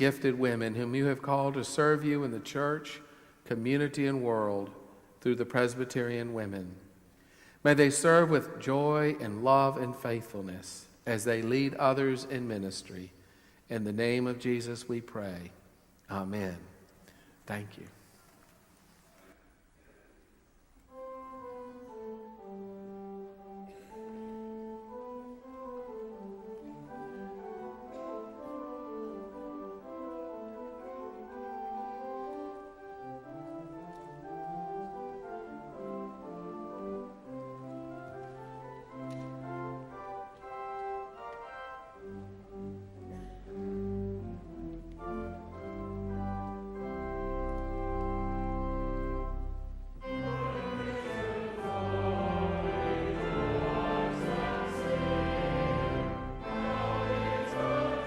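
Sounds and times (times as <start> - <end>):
slow instrumental chords: 20.9 - 58.0.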